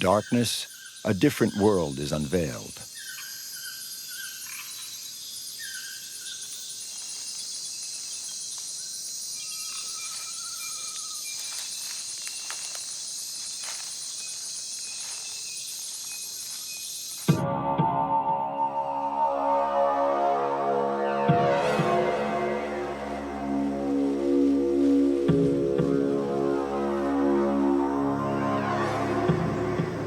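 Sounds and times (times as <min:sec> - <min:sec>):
insects trilling chorus: 0:00.0 - 0:17.4
short lower insect calls: 0:00.0 - 0:17.4.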